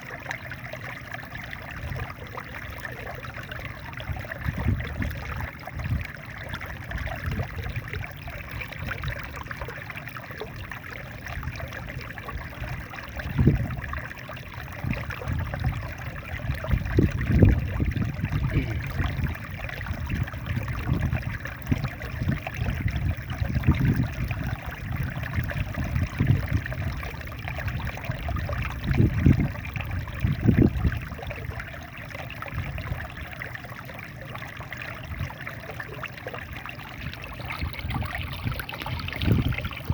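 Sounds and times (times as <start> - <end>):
small waterfall splashing: 34.0 - 39.9.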